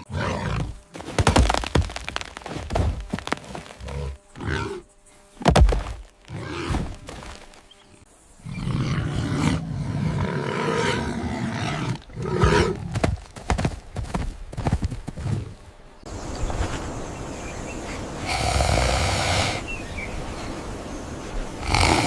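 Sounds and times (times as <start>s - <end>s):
animal growling and grunting: 0.0s - 0.8s, 3.4s - 4.9s, 6.2s - 7.3s, 8.4s - 13.0s, 21.6s - 22.0s
animal roaring: 0.0s - 0.8s, 3.8s - 4.9s, 6.3s - 7.0s, 8.4s - 12.9s.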